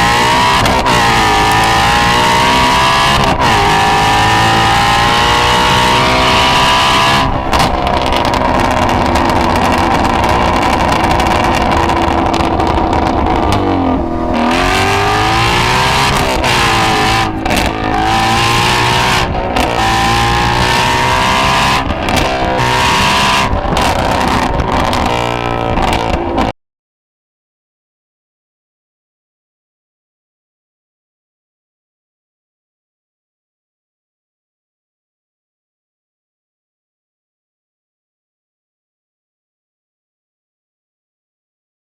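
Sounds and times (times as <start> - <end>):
car engine revving hard: 0.0 - 26.5.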